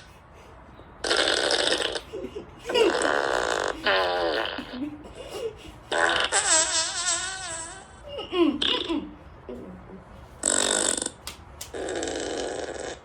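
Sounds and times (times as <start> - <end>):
fart sound effects: 1.0 - 2.1, 2.7 - 4.8, 5.9 - 7.9, 10.4 - 13.0.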